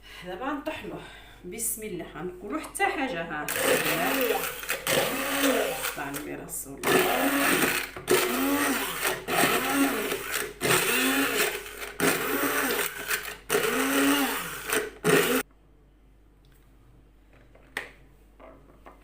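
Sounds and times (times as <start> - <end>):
electric blender grinding in pulses: 3.5 - 6.2, 6.8 - 15.4.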